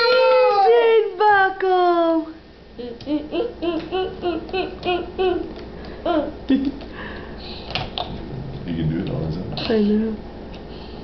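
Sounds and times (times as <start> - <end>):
toddler sing-song babbling: 2.8 - 5.5.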